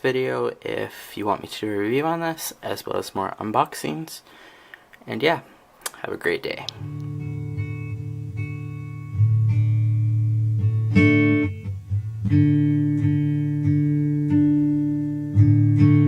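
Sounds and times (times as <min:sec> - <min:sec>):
plucked guitar music: 0:06.7 - 0:16.0.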